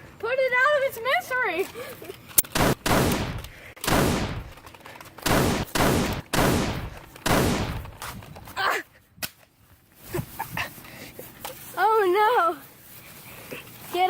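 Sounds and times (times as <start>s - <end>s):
gunshots with echoing tails: 2.5s - 4.6s, 5.2s - 8.0s.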